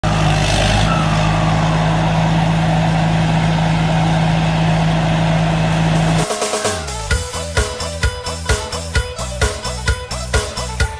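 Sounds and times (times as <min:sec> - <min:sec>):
combine harvester engine running: 0:00.0 - 0:10.8
music: 0:05.8 - 0:10.9.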